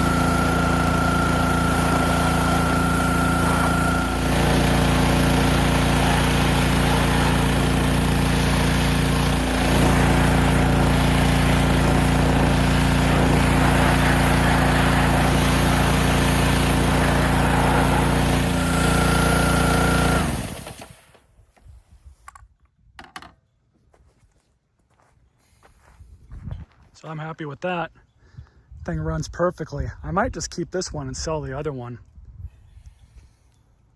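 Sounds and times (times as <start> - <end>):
engine running and winding down: 0.0 - 21.0.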